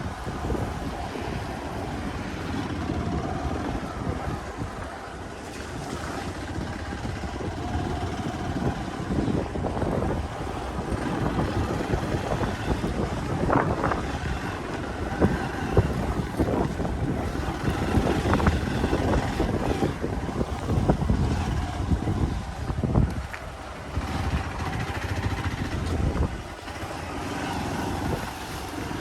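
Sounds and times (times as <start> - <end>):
motorcycle engine running: 0.0 - 29.0
wind buffeting microphone: 0.0 - 29.0.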